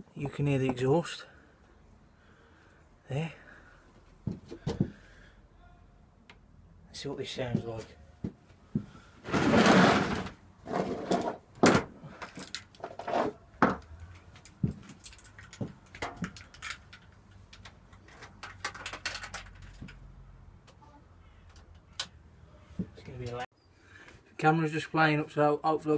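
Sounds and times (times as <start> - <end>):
scraping rustle: 9.2 - 11.4.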